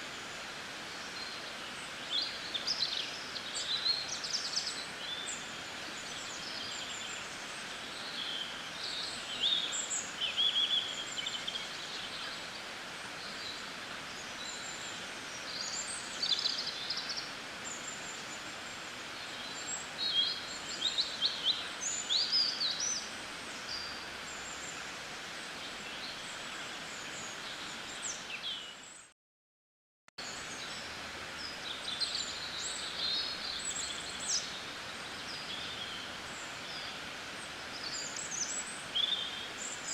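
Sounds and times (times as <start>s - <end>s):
steady outdoor hiss: 0.0s - 29.1s, 30.2s - 39.9s
birds chirping and trilling: 30.2s - 39.9s.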